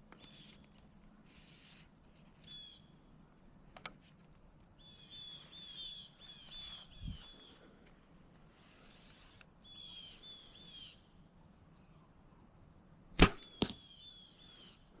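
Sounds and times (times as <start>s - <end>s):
bird chirping: 2.4s - 3.1s, 4.8s - 7.6s, 9.6s - 11.1s, 13.4s - 14.9s
arrow striking target: 13.2s - 13.8s
bow release crack: 13.2s - 13.9s.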